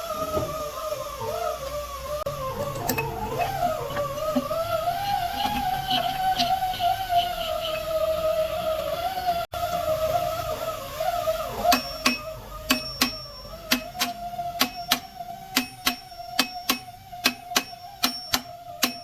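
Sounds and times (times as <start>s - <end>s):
sustained wavering tone: 1.4s - 19.0s
ringing percussive strikes: 11.7s - 19.0s.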